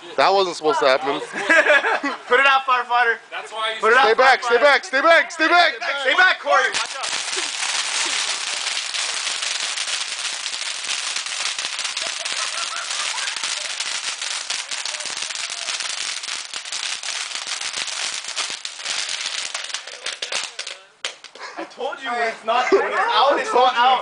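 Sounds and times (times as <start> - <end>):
firework hissing and crackling: 6.6 - 21.4.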